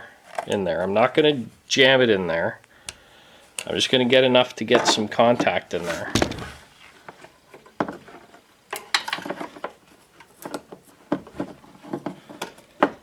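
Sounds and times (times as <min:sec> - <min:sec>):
clicks and knocks of metal handling: 0:04.7 - 0:13.0.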